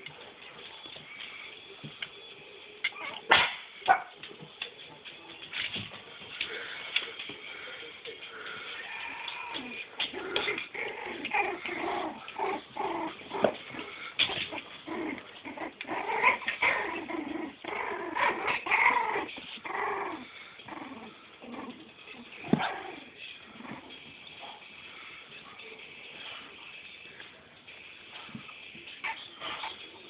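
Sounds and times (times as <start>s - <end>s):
puppies whimpering and yipping: 2.9s - 3.3s, 8.8s - 22.9s, 29.0s - 29.8s.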